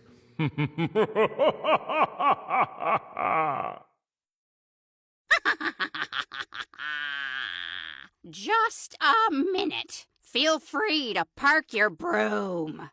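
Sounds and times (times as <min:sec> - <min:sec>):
spooky cackling laugh: 0:00.4 - 0:03.9, 0:05.3 - 0:08.2.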